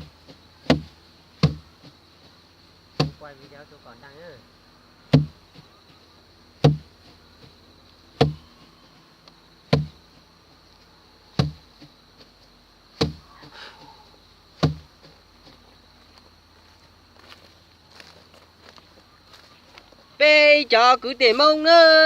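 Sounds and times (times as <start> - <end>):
heavy thuds of rice threshing: 0.0 - 3.7, 5.1 - 10.4, 11.3 - 16.2.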